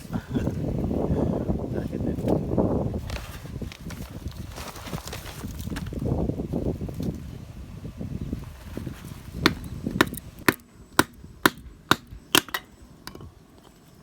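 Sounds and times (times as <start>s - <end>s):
blade chopping firewood: 9.4s - 13.3s.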